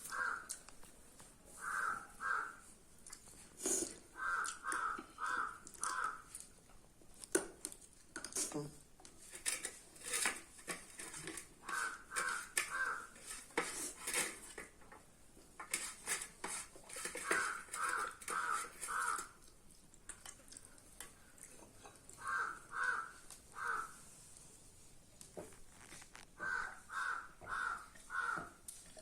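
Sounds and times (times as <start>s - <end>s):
crow cawing: 0.1s - 0.5s, 1.6s - 2.6s, 4.2s - 6.3s, 11.6s - 13.2s, 17.2s - 19.4s, 22.2s - 24.0s, 26.4s - 28.6s
clicks and scrapes on a plate: 9.1s - 15.0s, 15.6s - 19.4s.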